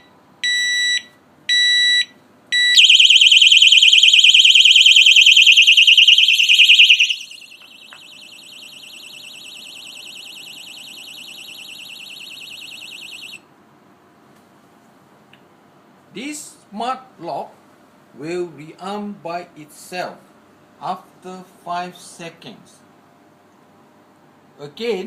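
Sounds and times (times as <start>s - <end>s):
alarm siren warbling: 2.8s - 13.4s.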